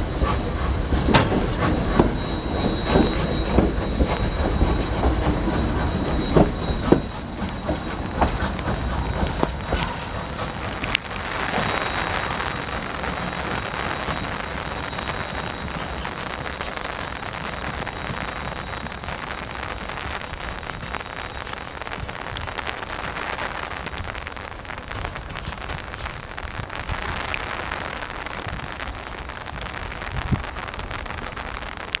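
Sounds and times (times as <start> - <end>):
steam train hissing: 0.0 - 23.8
faint high whine: 0.0 - 25.6.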